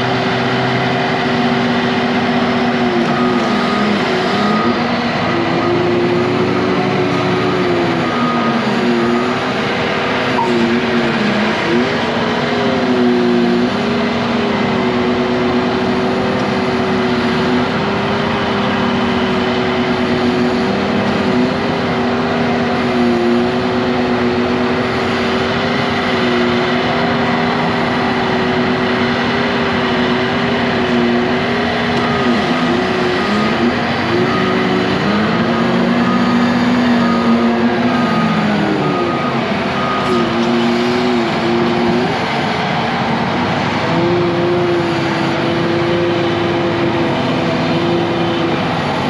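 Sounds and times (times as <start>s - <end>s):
diesel engine running under load: 0.0s - 49.0s
backup alarm beeping: 32.0s - 40.4s.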